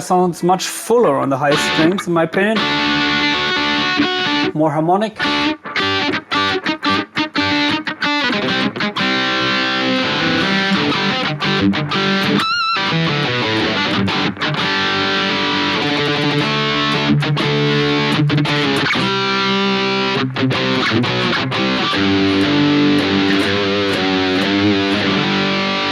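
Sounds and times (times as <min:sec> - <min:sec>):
distorted electric guitar chords: 0:01.5 - 0:25.9
guitar note held with vibrato: 0:20.8 - 0:25.9.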